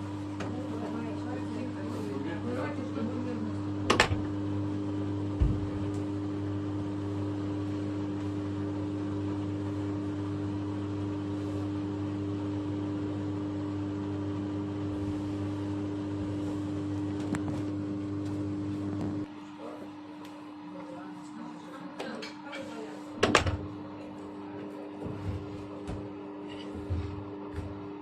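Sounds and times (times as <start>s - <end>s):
washing machine spin hum: 0.0s - 28.0s
low thump: 5.4s - 5.7s.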